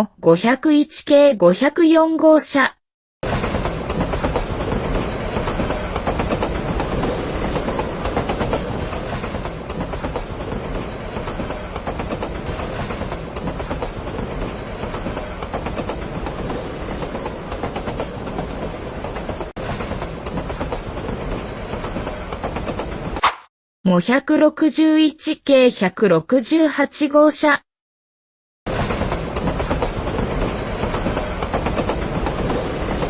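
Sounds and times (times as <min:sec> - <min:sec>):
streetcar wheels on rails: 0:03.2 - 0:23.2, 0:28.7 - 0:33.0.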